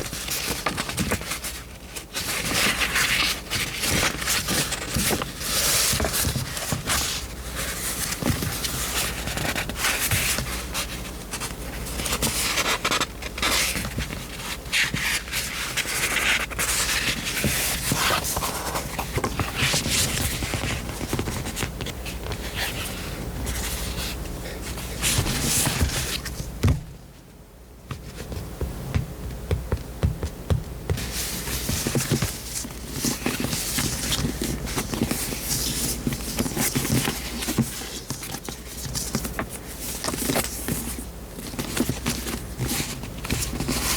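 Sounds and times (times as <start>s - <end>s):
paper pages rustling: 0.0s - 26.6s, 31.0s - 43.9s.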